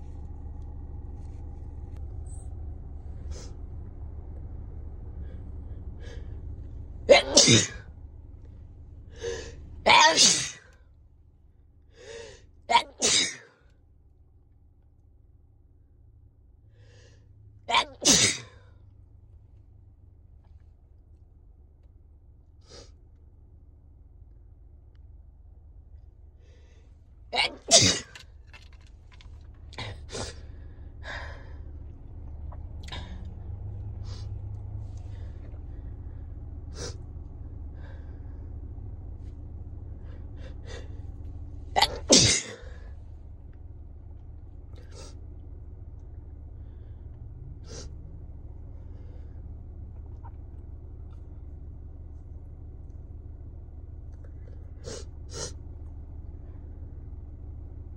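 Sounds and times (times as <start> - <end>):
gasping in-breath: 5.2 - 6.5, 9.1 - 9.6, 11.9 - 12.4, 29.8 - 31.7, 37.7 - 38.5
person sneezing: 7.1 - 7.8, 9.2 - 10.7, 12.1 - 13.5, 17.7 - 18.6, 27.4 - 28.2, 41.8 - 42.8.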